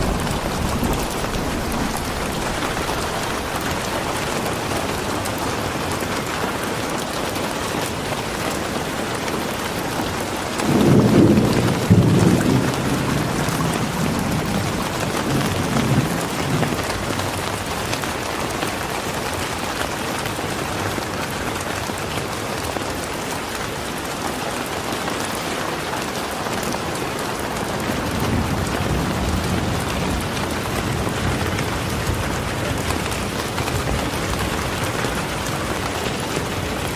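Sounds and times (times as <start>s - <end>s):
low thunder rumble: 0.0s - 5.9s, 10.6s - 17.4s
steady rain falling: 0.0s - 36.9s.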